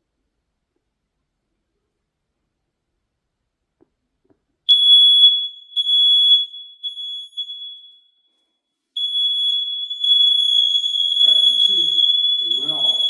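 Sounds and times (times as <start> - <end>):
shrill smoke alarm tone: 4.7 - 13.0.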